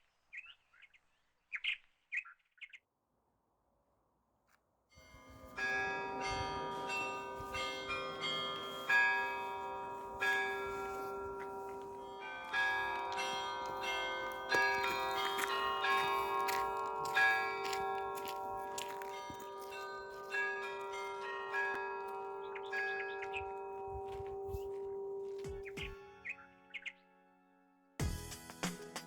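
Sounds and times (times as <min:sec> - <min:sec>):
church bells ringing: 0:05.0 - 0:26.7.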